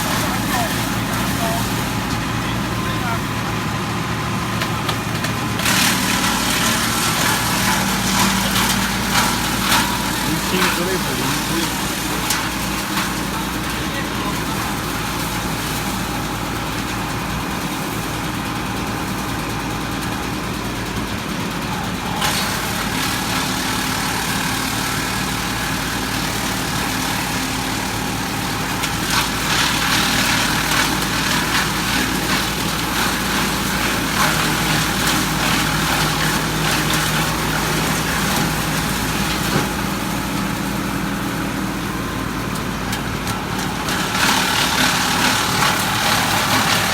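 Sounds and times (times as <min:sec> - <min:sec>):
tractor engine running: 0:00.0 - 0:46.9
wood chipper crackling: 0:00.0 - 0:46.9.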